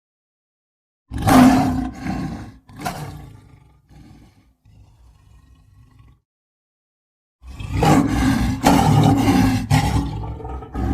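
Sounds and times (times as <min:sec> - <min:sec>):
lion roaring: 0:01.1 - 0:06.2, 0:07.4 - 0:10.9.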